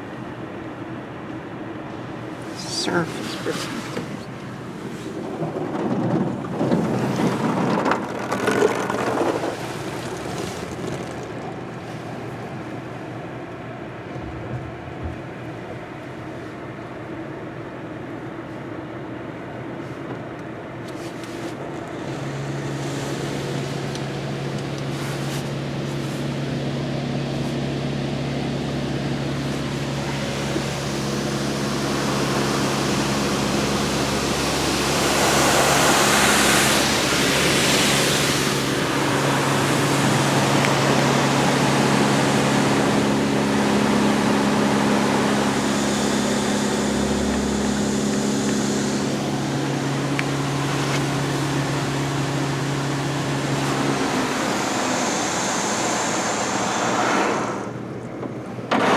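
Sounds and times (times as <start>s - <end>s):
pump motors humming: 0.0s - 58.9s
water jets spraying: 1.9s - 5.4s, 6.4s - 12.6s, 21.0s - 57.8s.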